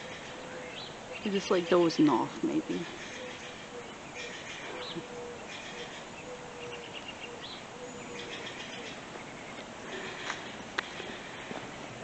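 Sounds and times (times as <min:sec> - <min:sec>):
dove cooing: 0:00.0 - 0:09.2
small birds chirping: 0:00.0 - 0:12.0.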